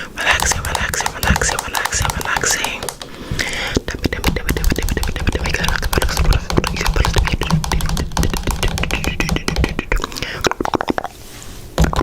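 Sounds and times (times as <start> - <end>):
rapid irregular clicks and taps: 0.3 - 3.2, 3.9 - 11.0.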